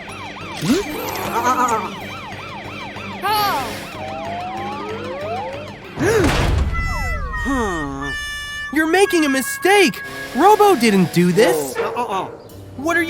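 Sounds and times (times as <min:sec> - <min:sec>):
cartoon siren wailing: 0:00.0 - 0:12.4
background music: 0:00.0 - 0:13.0
short sound effects: 0:03.6 - 0:11.8.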